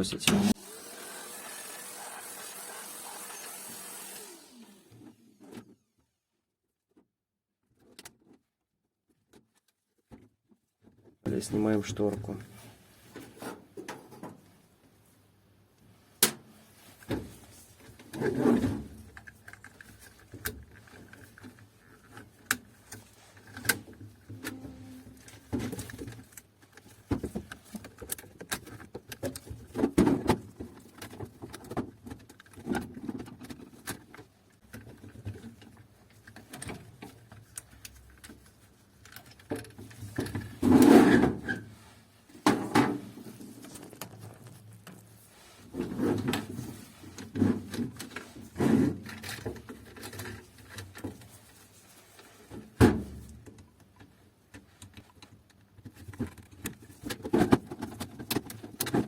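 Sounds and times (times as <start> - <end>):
plastic clicks knocks and scrapes: 17.0 - 41.3, 52.5 - 59.0.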